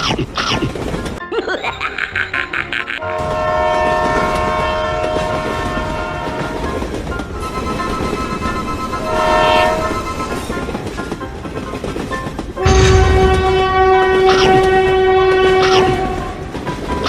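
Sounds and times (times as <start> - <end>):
train horn blasts: 3.0 - 11.1, 12.6 - 16.6
passing train rumble: 3.2 - 16.9
bell-like ringing: 7.3 - 11.3.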